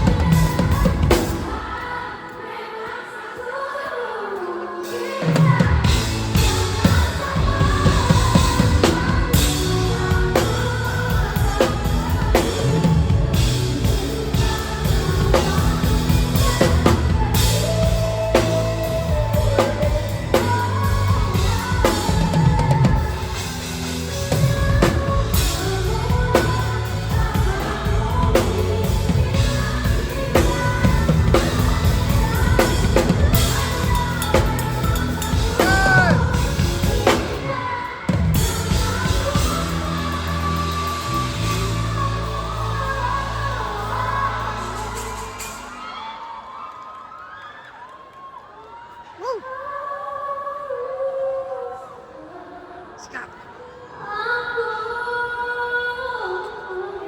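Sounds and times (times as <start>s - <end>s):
drum kit beat: 0.0s - 1.6s, 5.4s - 37.5s
pop song with singing: 0.0s - 57.0s.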